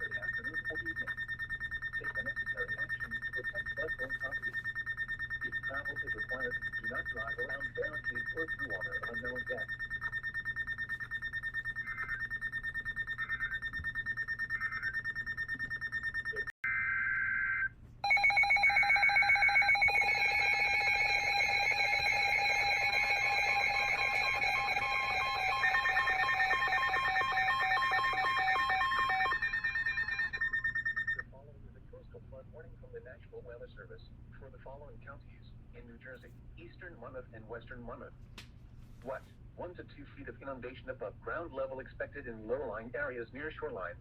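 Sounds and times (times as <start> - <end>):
several radio alarm beeps: 0.0 - 31.2
rapidly pulsing alarm beep: 0.0 - 31.3
two-tone digital data burst: 18.0 - 31.2.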